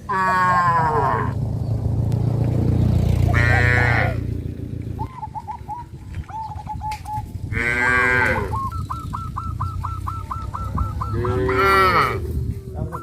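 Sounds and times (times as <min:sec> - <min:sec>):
cows mooing: 0:00.0 - 0:01.4, 0:03.2 - 0:04.4, 0:07.5 - 0:08.7, 0:10.3 - 0:12.4
bird chirping: 0:04.3 - 0:07.5, 0:08.1 - 0:13.0.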